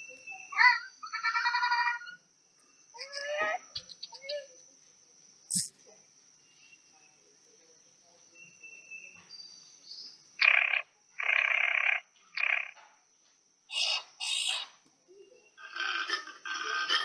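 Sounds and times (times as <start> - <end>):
faint thin chirps: 5.5 - 5.9
harsh animal calls: 15.6 - 17.0.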